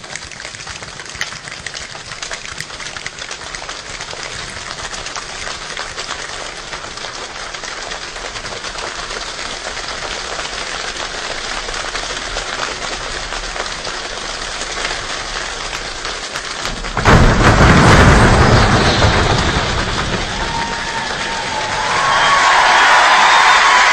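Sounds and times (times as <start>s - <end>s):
rain-like crackles and patters: 0.0s - 23.9s
sudden loud blast: 16.7s - 23.4s.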